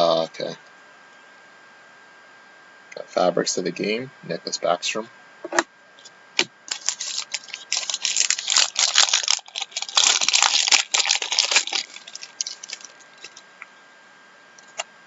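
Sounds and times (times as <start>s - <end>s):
foil wrapper tearing and crinkling: 6.7s - 13.5s.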